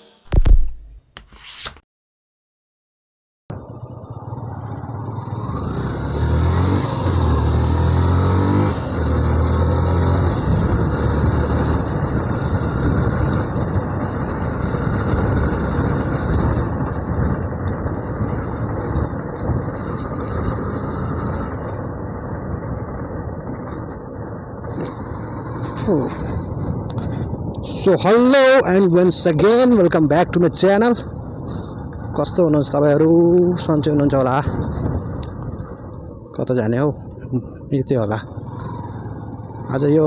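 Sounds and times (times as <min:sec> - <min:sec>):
motorcycle engine pulling away: 0:03.5 - 0:27.3, 0:38.2 - 0:40.0.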